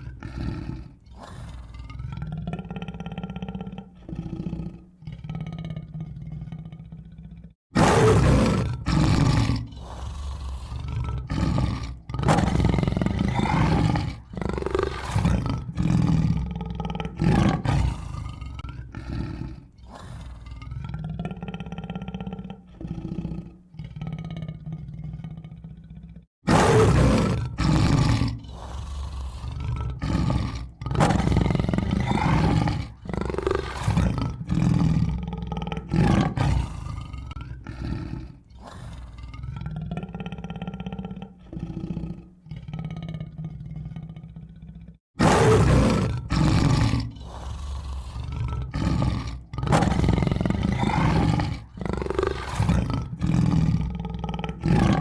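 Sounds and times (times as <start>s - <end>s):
tiger roaring and growling: 0.0s - 55.0s.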